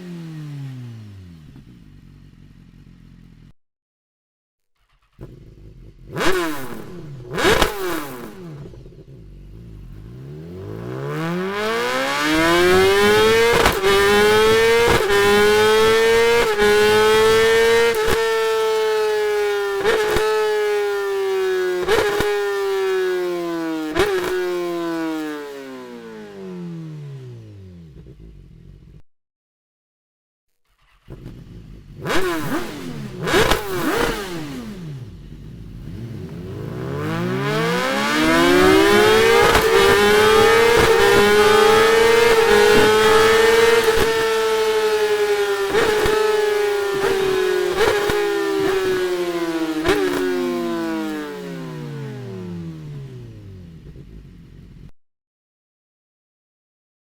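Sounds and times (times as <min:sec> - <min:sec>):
motorcycle engine revving: 0:00.0 - 0:03.6, 0:04.8 - 0:29.0, 0:30.6 - 0:54.9.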